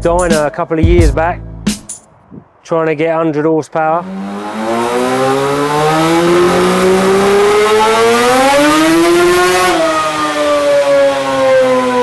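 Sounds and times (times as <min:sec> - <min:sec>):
two-stroke engine revving: 0:04.0 - 0:12.0.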